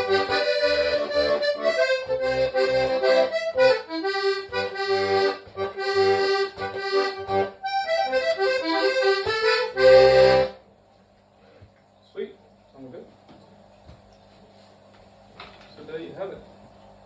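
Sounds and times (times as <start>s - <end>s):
button accordion melody: 0.0s - 10.6s.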